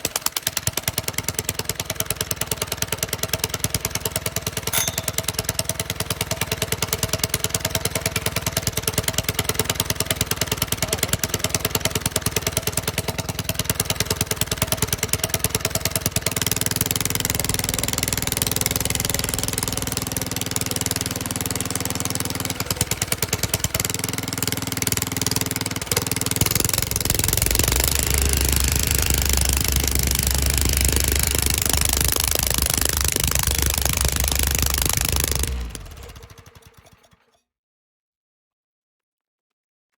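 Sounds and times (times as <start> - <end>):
engine putter: 0.0 - 37.4
vibrating plate pounding: 26.0 - 35.6.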